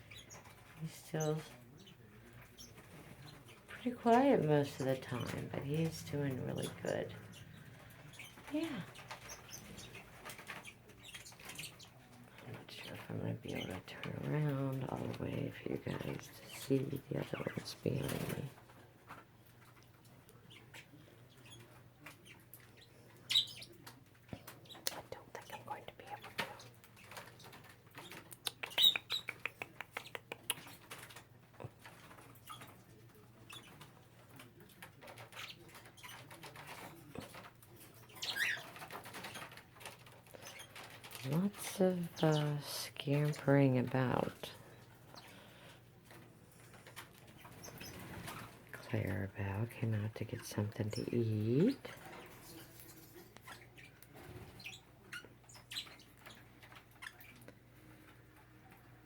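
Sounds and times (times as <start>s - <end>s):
bird chirp: 0.0s - 12.2s, 20.4s - 32.8s, 35.0s - 42.6s, 46.8s - 48.5s, 50.8s - 57.5s
parakeets scratching and tapping: 0.0s - 59.0s.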